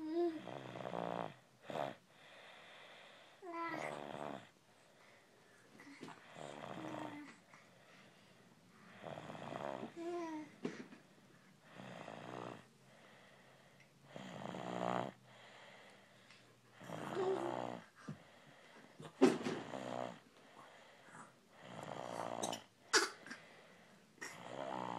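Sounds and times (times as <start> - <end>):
person snoring: 6.3 - 7.3, 8.9 - 10.0, 14.1 - 15.2, 16.7 - 17.9, 21.6 - 22.5, 24.2 - 24.9.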